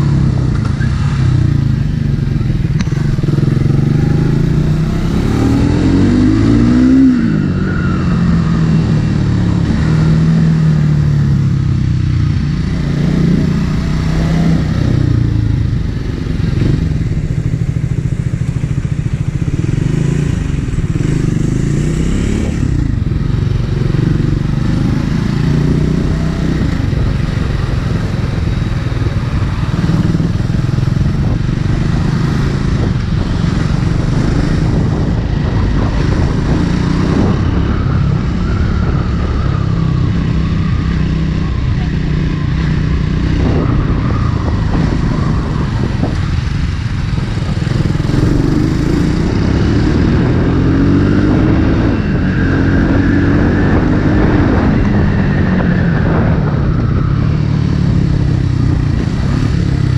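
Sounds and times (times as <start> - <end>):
motorcycle engine and exhaust: 0.0 - 59.9.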